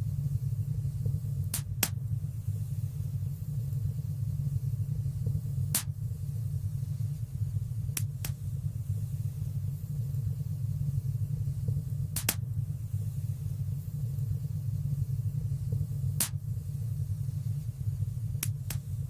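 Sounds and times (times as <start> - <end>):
fire crackling pops: 1.0 - 2.2, 5.2 - 6.2, 7.8 - 8.6, 11.4 - 12.7, 15.7 - 16.6, 18.2 - 19.0.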